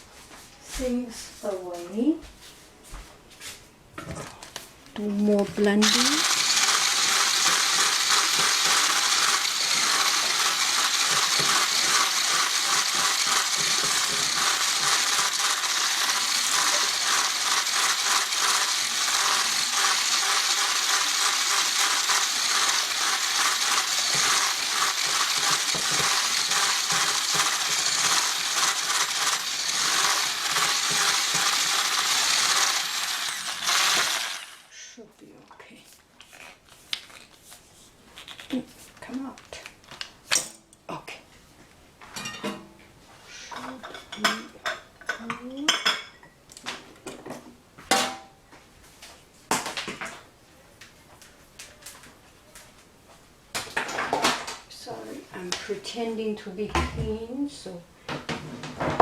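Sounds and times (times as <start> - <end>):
kitchen blender whirring: 5.8 - 34.7.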